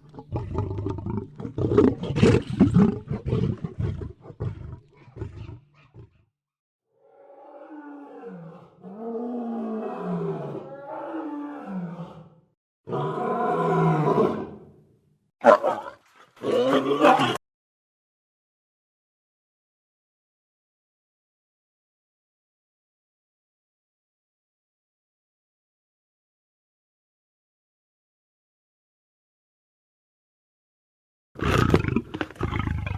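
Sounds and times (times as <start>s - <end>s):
lion growling: 0.0s - 6.2s, 7.0s - 14.8s, 15.4s - 17.4s, 31.4s - 32.9s.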